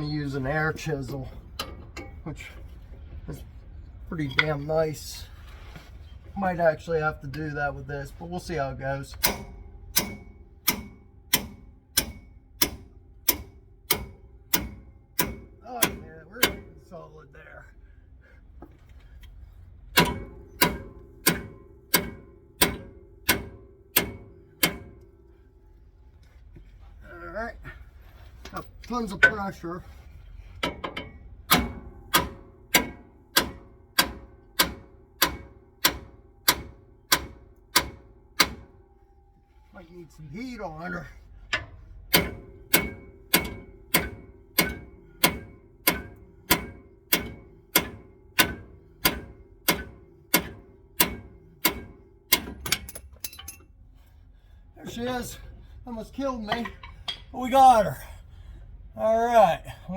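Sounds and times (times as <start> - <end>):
hammer striking metal: 9.2 - 16.8, 20.0 - 25.2, 30.6 - 38.8, 41.5 - 53.6.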